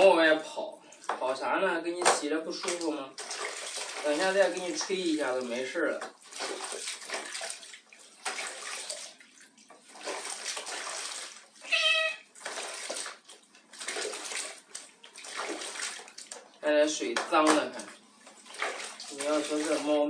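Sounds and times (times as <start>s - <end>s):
water splashing in a basin: 0.0s - 20.0s
cat meow: 11.6s - 12.3s.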